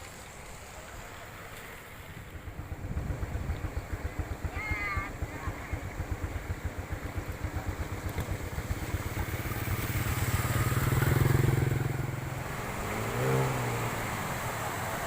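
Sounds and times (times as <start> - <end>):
second engine hum: 2.4 - 15.0
vehicle engine passing: 7.4 - 15.0.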